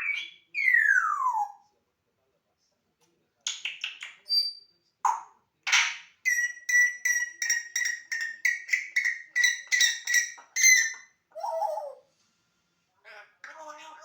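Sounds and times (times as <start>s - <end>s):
parrot harsh noise: 6.3s - 12.0s.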